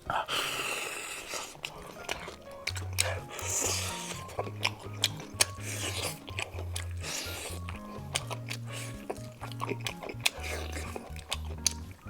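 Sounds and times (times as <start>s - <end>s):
crunchy chewing of fried food: 0.0s - 12.0s
background music with bass line: 2.6s - 12.0s.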